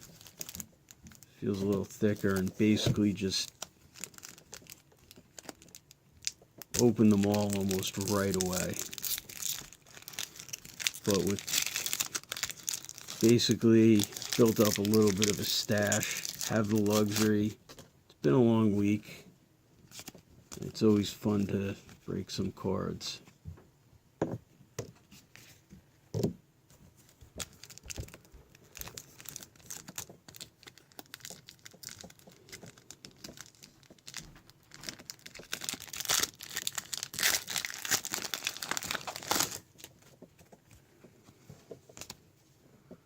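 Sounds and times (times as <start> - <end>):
card packs tearing and crinkling: 0.0 - 17.6, 27.4 - 39.9.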